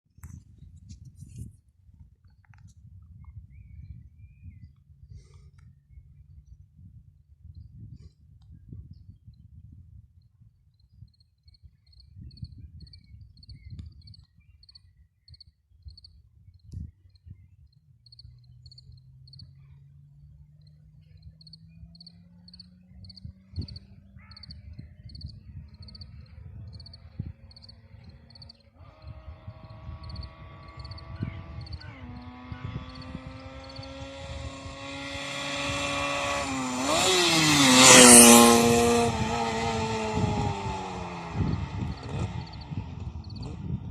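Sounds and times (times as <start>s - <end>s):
low gusty rumble: 16.0s - 43.9s
motorcycle engine: 18.1s - 43.9s
insects chirping: 21.4s - 24.5s, 29.7s - 38.1s.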